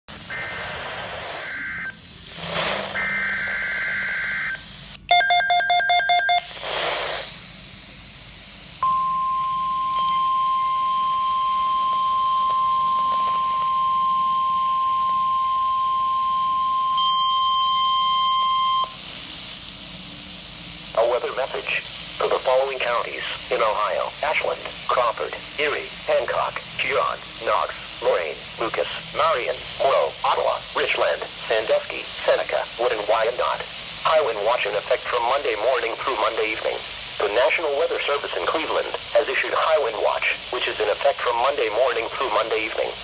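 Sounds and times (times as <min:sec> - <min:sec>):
static hiss: 0:00.1 - 0:05.1, 0:06.4 - 0:08.8, 0:18.8 - 0:43.0
pulsing alarm beep: 0:02.9 - 0:06.5, 0:08.8 - 0:19.0.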